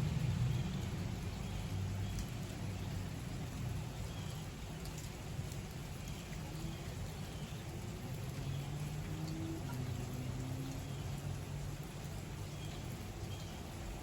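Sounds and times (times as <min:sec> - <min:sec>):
steady rain falling: 0:00.0 - 0:14.0.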